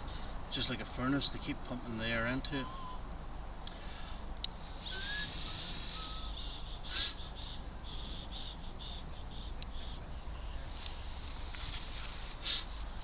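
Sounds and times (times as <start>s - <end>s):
short whistled bird notes: 4.8s - 6.6s
high chirping bird trill: 4.8s - 10.7s.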